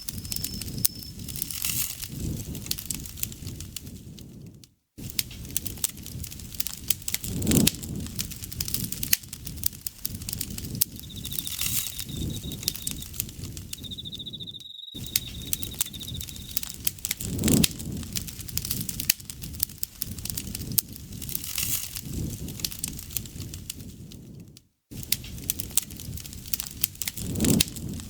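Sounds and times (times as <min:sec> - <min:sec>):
insect trilling: 0:00.0 - 0:01.4, 0:10.4 - 0:16.8
campfire crackling and popping: 0:00.0 - 0:04.0, 0:05.1 - 0:24.3, 0:25.0 - 0:28.0
rush of flame: 0:05.0 - 0:13.8, 0:15.0 - 0:28.0.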